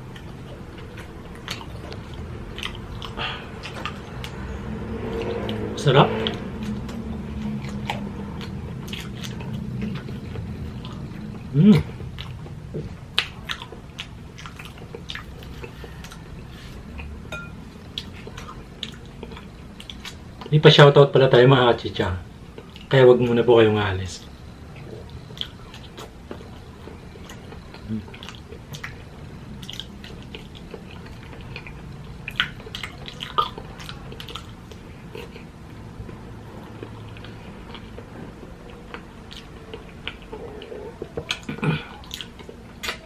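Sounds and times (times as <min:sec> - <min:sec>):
person chewing food: 0:00.0 - 0:20.6, 0:22.3 - 0:23.0, 0:24.2 - 0:43.0
mouth clicks and smacks: 0:06.2 - 0:17.1, 0:24.7 - 0:43.0.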